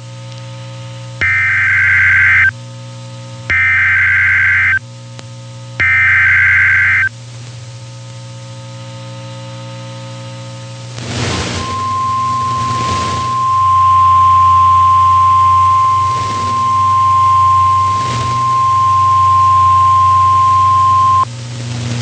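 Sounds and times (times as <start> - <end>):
steady low hum: 1.0 - 22.0
screeching data bursts: 1.2 - 2.5, 3.5 - 4.8, 5.8 - 7.1, 11.4 - 21.2.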